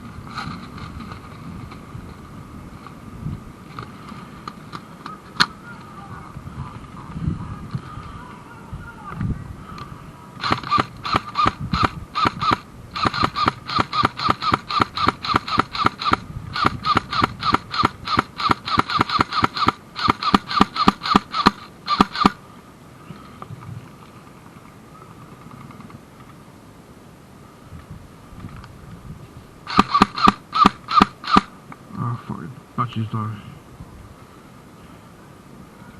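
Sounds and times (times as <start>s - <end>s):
airsoft gun shots: 10.4s - 22.4s, 29.7s - 31.5s.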